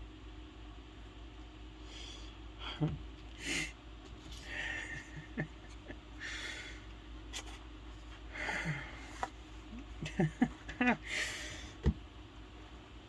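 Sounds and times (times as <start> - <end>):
man sobbing: 4.4 - 6.8, 8.3 - 9.1, 9.7 - 11.7
man sniffling: 8.3 - 9.2.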